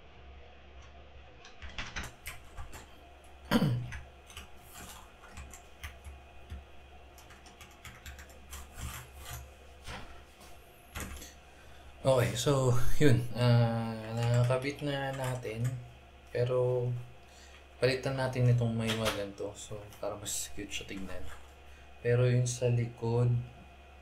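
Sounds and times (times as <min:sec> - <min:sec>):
keycaps clicking onto keyboard: 0:01.4 - 0:02.9, 0:03.8 - 0:06.6, 0:07.2 - 0:09.4, 0:10.9 - 0:11.3, 0:14.0 - 0:15.8.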